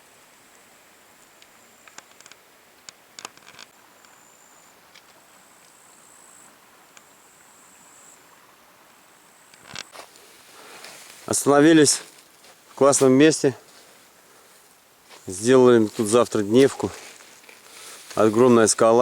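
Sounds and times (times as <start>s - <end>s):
small sharp clicks: 1.4s - 4.2s.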